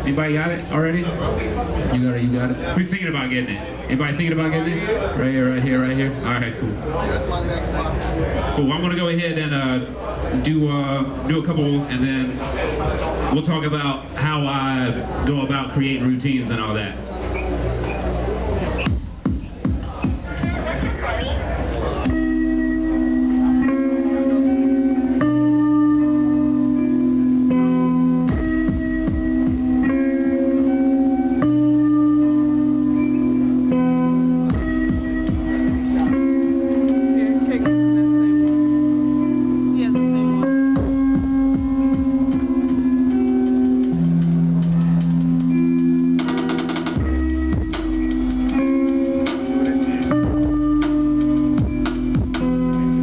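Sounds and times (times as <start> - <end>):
sampled guitar-like chords: 0.0 - 53.0
deep bass: 17.6 - 53.0.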